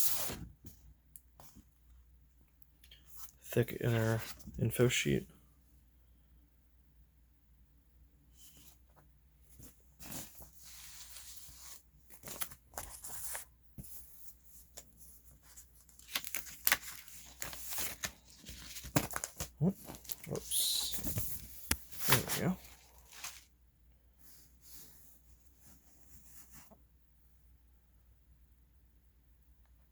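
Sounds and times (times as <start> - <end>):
paper and cardboard rustling: 9.5 - 23.6.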